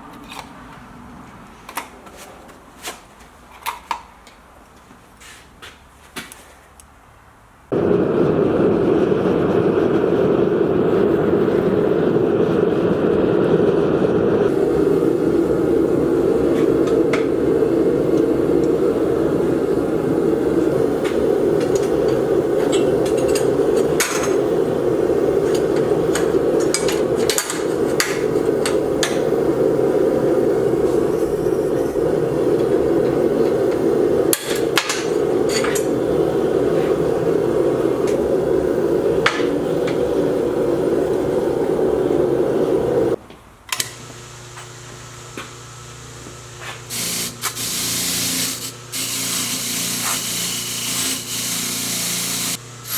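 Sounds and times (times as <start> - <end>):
loud rushing noise: 7.7 - 43.2.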